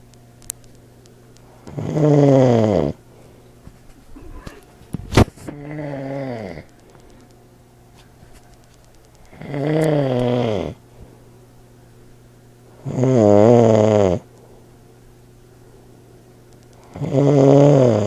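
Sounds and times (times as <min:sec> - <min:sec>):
man snoring loudly: 0:01.7 - 0:03.0, 0:05.6 - 0:06.6, 0:09.3 - 0:10.8, 0:12.8 - 0:14.2, 0:16.9 - 0:18.0.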